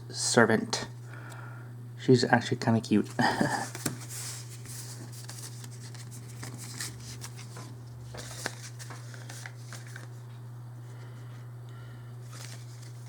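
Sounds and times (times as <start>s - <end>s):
low electrical hum: 0.0s - 13.0s
trading cards rustling: 3.1s - 10.4s, 12.2s - 13.0s.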